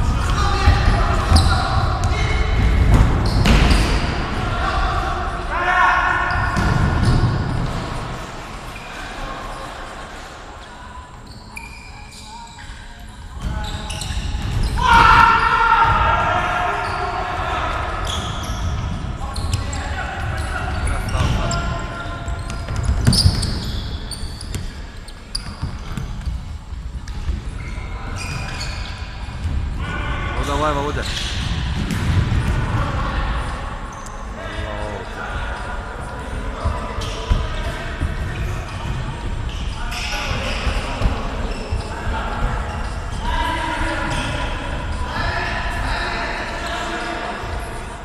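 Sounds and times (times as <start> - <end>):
sneakers squeaking on floor: 0.0 - 4.4, 6.2 - 48.0
ball thuds in sports hall: 0.2 - 4.3, 31.2 - 32.8.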